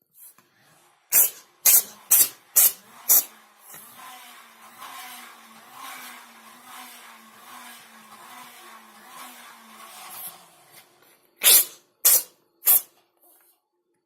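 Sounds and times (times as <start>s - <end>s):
kitten sneezing: 11.4s - 12.8s.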